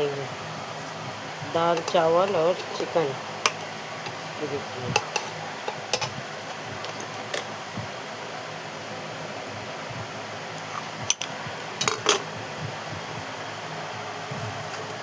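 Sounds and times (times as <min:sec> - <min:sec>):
fan running noise: 0:00.0 - 0:15.0
dishes clinking: 0:04.9 - 0:06.2, 0:10.7 - 0:12.3.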